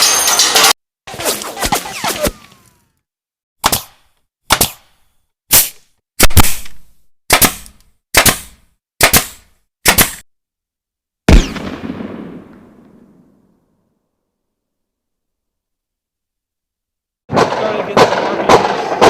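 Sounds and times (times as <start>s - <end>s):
gunshots: 1.1s - 2.7s, 8.2s - 10.2s, 11.3s - 13.1s, 17.3s - 19.0s.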